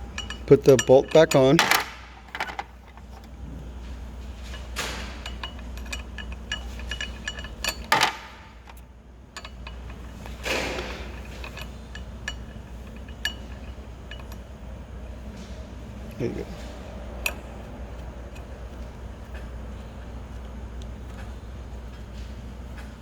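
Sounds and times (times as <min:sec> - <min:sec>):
small metallic clicks and clinks: 0:00.1 - 0:03.3, 0:04.4 - 0:08.8, 0:09.4 - 0:14.5.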